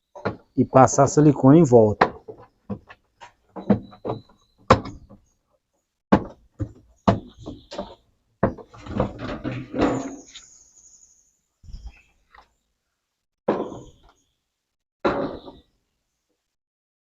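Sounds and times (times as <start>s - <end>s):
hard plastic knocks and clacks: 2.0s - 5.2s.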